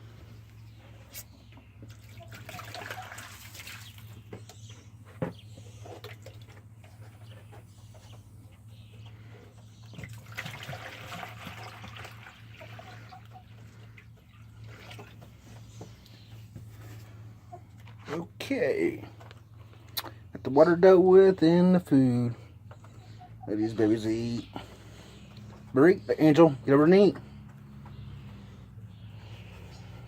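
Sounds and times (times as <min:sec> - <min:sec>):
water splashing into a bowl: 0:01.9 - 0:04.2, 0:10.0 - 0:13.3
steady low hum: 0:03.9 - 0:30.0.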